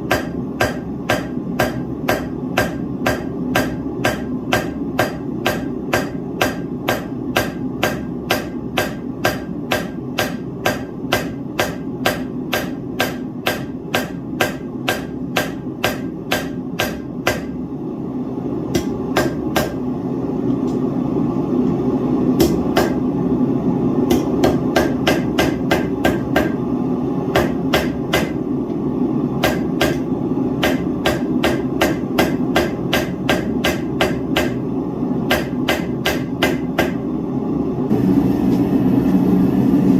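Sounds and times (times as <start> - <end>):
hammer striking steel on anvil: 0.0 - 17.6, 18.7 - 19.8, 22.4 - 23.0, 24.1 - 26.6, 27.3 - 28.4, 29.4 - 34.6, 35.3 - 37.0.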